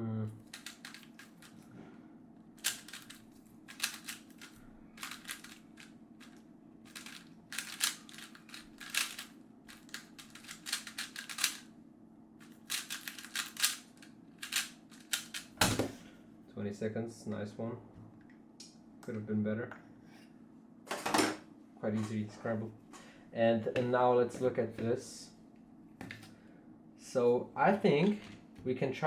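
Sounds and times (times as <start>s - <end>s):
speedcube plastic clicks: 0.5s - 1.5s, 2.6s - 5.6s, 6.9s - 11.6s, 12.7s - 13.8s, 14.4s - 15.5s.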